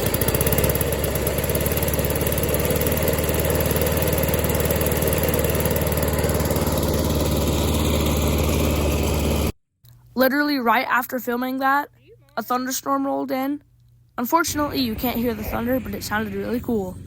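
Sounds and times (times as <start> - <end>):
lawn mower engine running: 0.0 - 9.6.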